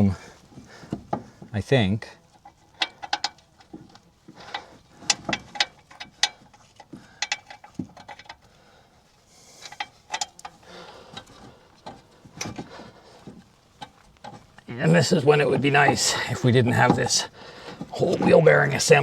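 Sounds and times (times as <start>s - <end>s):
metallic clicks of hand tools: 2.4s - 8.5s, 9.6s - 12.6s.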